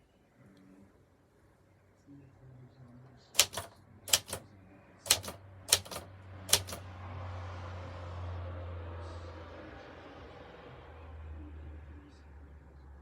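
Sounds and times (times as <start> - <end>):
typewriter keys clacking: 3.4 - 4.4, 5.1 - 6.8.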